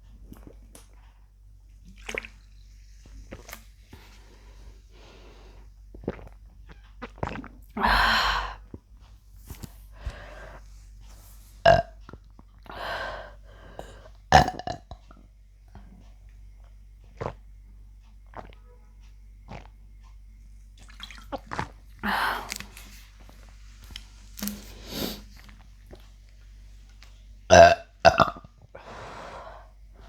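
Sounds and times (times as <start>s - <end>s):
woman burping: 11.7s - 11.9s, 14.4s - 15.0s, 27.5s - 28.4s.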